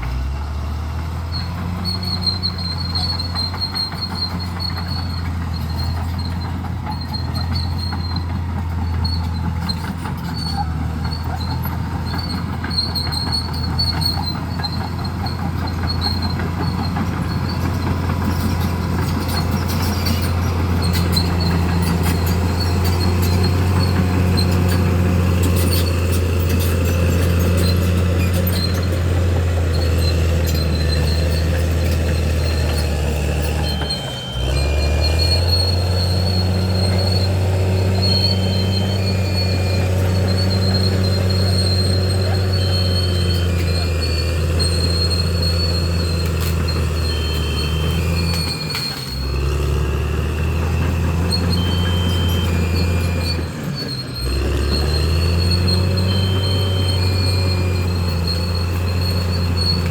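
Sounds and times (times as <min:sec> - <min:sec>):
bulldozer diesel engine running: 0:00.0 - 0:59.9
high squeak: 0:01.3 - 0:59.9.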